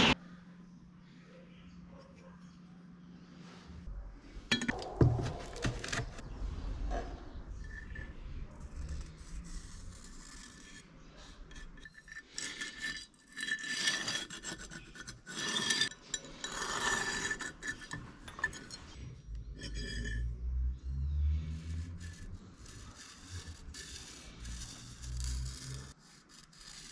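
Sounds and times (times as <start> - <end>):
file rasping on steel: 7.7 - 20.4, 21.4 - 26.9.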